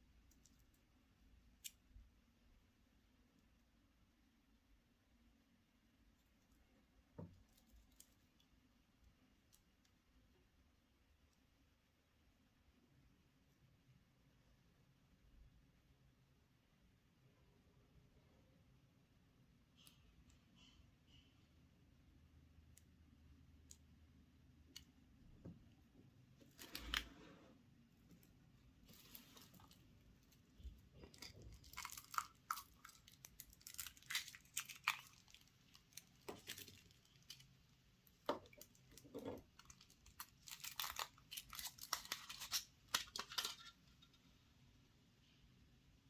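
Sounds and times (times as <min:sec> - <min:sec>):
foil wrapper tearing and crinkling: 0:31.2 - 0:37.5, 0:39.6 - 0:43.7.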